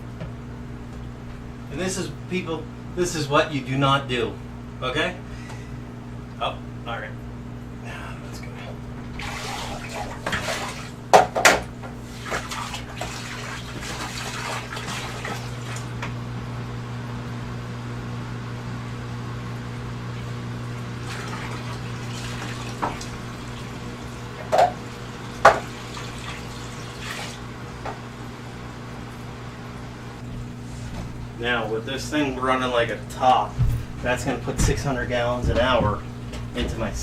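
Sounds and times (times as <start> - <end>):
steady low hum: 0.0 - 37.0
water splashing into sump: 9.1 - 16.0, 21.0 - 27.5.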